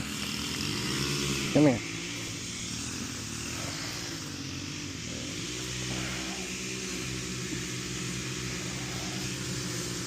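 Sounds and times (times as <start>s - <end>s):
motor running with low hum: 0.0s - 10.0s.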